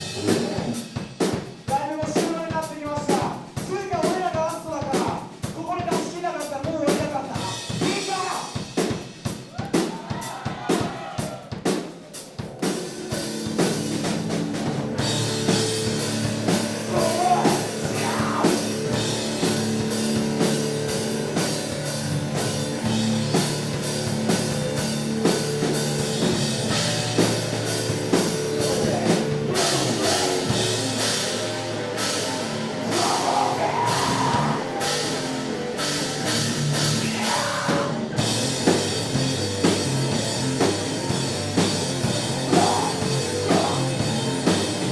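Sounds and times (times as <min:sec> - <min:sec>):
live rock band playing: 0:00.0 - 0:44.9
person singing: 0:16.9 - 0:18.7, 0:28.6 - 0:30.7, 0:32.9 - 0:35.1, 0:37.0 - 0:38.0, 0:42.4 - 0:44.5.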